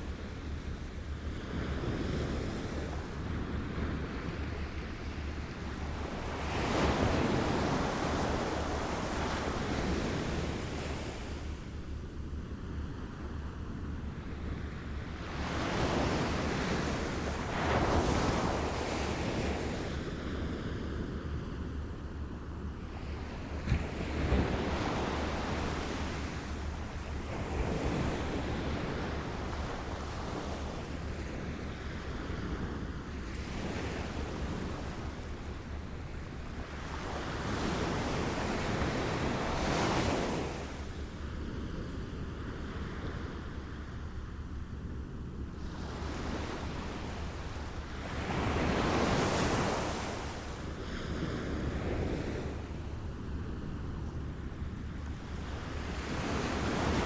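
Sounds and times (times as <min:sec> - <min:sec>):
wind rumble on microphone: 0:00.0 - 0:57.0
small waves lapping at shore: 0:12.5 - 0:21.6, 0:22.9 - 0:44.5, 0:45.4 - 0:57.0.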